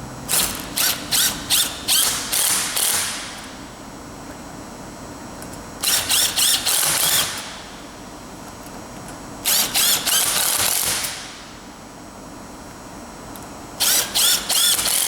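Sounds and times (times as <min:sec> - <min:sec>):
impact wrench hammering: 0:00.3 - 0:03.6.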